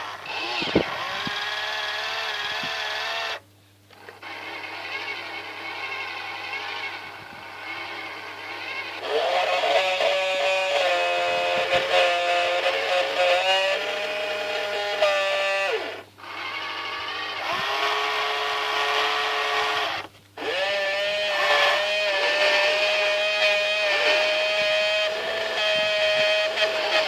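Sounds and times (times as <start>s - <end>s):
small electric motors whining: 0.0s - 27.0s.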